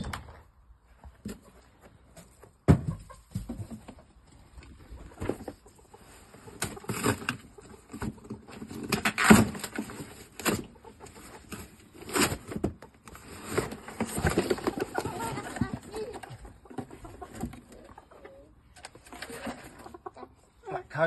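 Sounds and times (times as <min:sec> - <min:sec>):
knocks and thumps of boxes: 0:02.4 - 0:04.2, 0:12.0 - 0:17.8.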